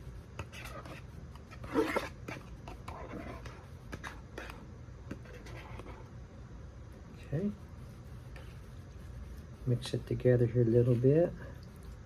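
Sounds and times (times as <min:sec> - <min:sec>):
utensil scraping a tray: 0:00.4 - 0:04.6.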